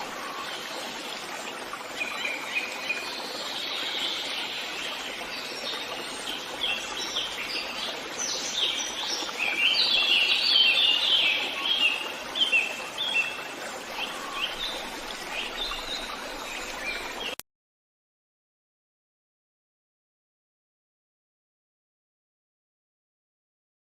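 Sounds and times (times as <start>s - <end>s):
birds chirping and trilling: 2.0s - 17.4s.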